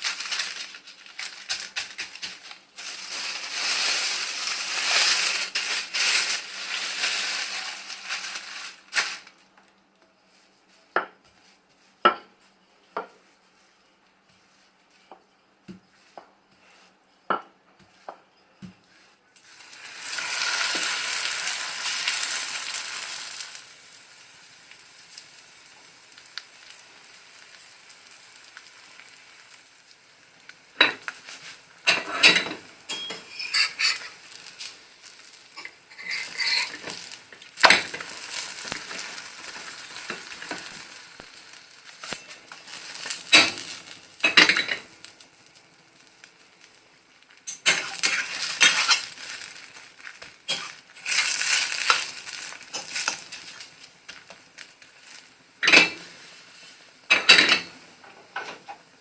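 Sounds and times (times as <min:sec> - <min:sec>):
spatula scraping pan: 0:00.0 - 0:09.1, 0:30.8 - 0:44.9, 0:47.5 - 0:53.6
pancake sizzling in oil: 0:00.0 - 0:09.3, 0:15.8 - 0:59.0.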